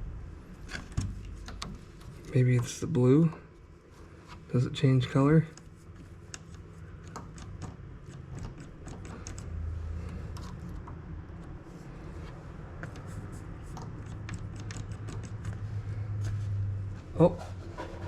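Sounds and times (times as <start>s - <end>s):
low steady hum: 0.0s - 18.0s
clicks of wire connectors: 5.5s - 11.6s, 12.8s - 15.6s.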